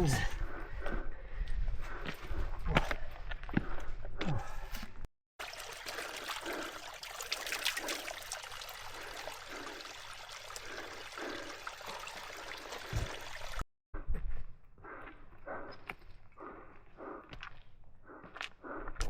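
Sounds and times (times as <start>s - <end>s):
stream water trickling: 5.4s - 13.6s.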